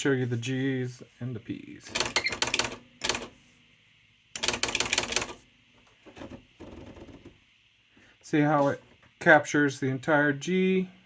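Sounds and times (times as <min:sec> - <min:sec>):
electronic typewriter strikes: 0:01.9 - 0:03.3, 0:04.4 - 0:05.4.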